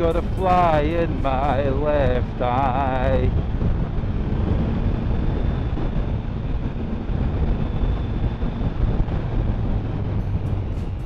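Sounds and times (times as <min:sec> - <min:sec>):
motorcycle engine drone: 0:00.0 - 0:11.0
wind buffeting microphone: 0:00.0 - 0:11.0.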